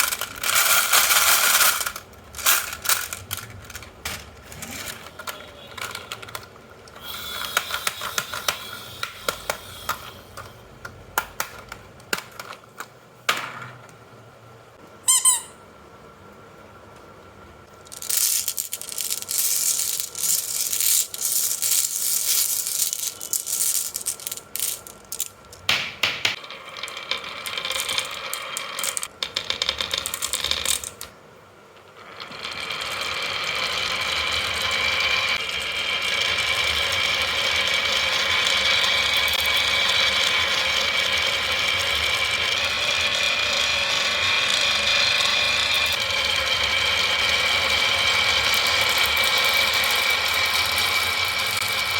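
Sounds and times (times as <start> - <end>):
marbles clattering down wooden run: 0.0 - 3.8, 17.9 - 25.3, 26.3 - 31.0.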